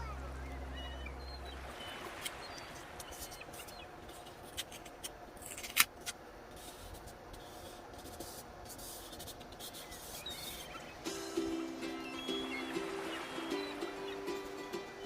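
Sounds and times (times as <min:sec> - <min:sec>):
paper rubbing and rustling: 0:03.1 - 0:10.8
music: 0:11.0 - 0:15.0.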